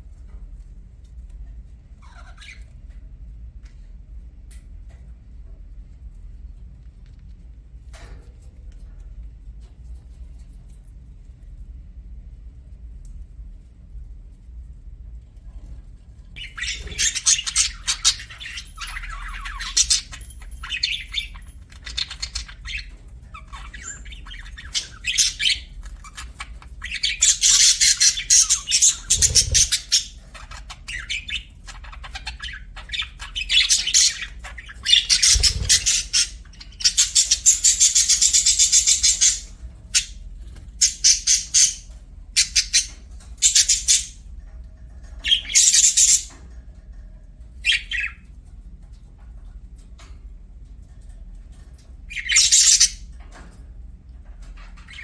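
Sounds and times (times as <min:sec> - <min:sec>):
budgerigars chirping and chattering: 0:02.0 - 0:02.7, 0:16.4 - 0:44.2, 0:45.1 - 0:46.4, 0:47.6 - 0:48.3, 0:52.0 - 0:53.1, 0:54.6 - 0:55.0.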